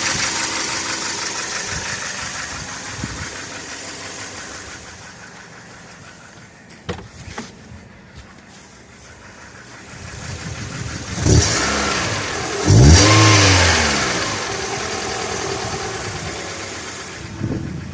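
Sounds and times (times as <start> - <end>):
car engine revving: 0.0 - 6.6, 9.0 - 17.9.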